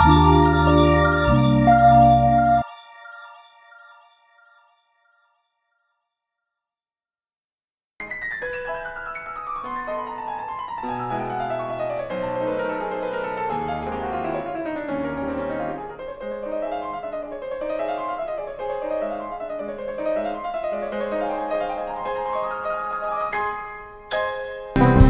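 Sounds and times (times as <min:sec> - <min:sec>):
piano music: 0:00.0 - 0:02.8, 0:08.0 - 0:25.0.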